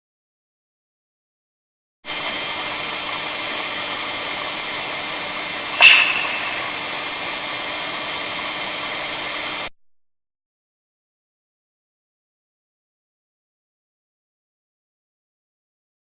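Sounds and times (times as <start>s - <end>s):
steady hiss: 2.1s - 9.7s
sharp clap with short ring: 5.8s - 6.8s.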